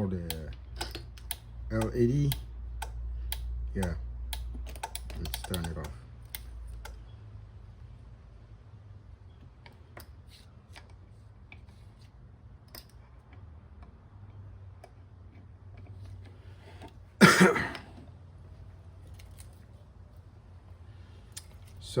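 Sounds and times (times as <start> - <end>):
clicks of small parts handled: 4.3 - 7.0, 19.0 - 19.8
man coughing: 17.2 - 17.9.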